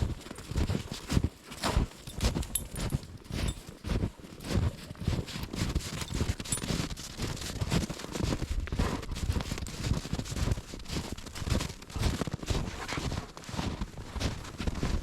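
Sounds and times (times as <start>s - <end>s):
footsteps crunching in snow: 0.0s - 15.0s.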